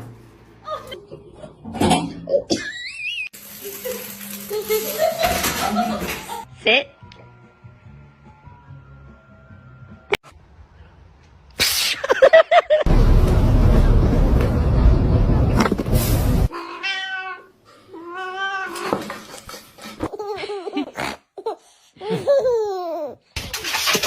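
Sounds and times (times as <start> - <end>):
loud rushing rumbling noise: 12.9 - 16.5
cat meowing: 16.5 - 18.9.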